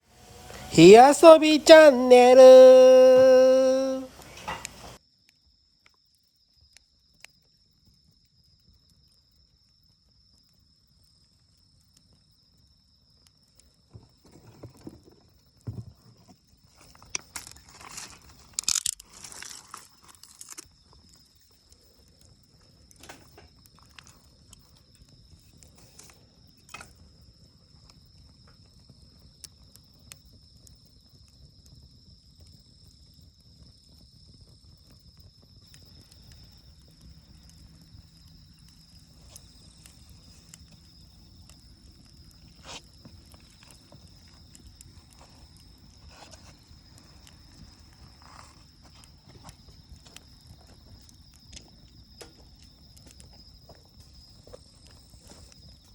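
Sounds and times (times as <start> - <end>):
campfire crackling and popping: 0.2 - 5.0, 16.5 - 55.9
insects chirring: 0.2 - 55.9.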